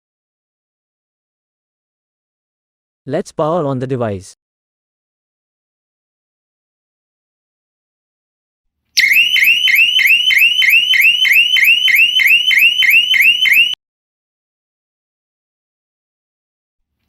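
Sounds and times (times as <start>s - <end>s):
electronic alarm siren sweeping: 9.0s - 13.8s.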